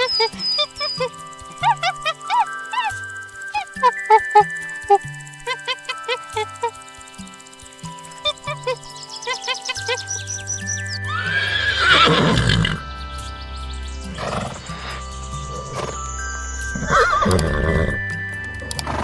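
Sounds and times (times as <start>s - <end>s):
background music: 0.0s - 19.0s
horse neighing: 11.1s - 12.8s.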